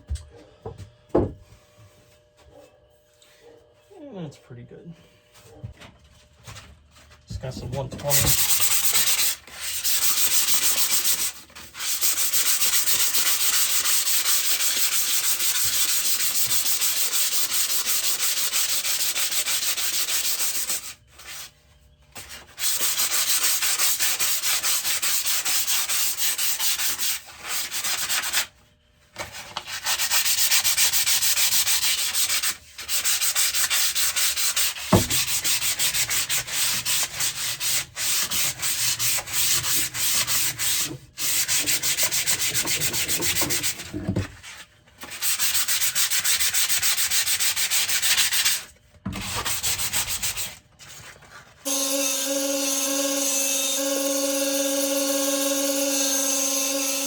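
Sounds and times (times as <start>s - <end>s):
belt sander grinding: 51.7s - 57.0s.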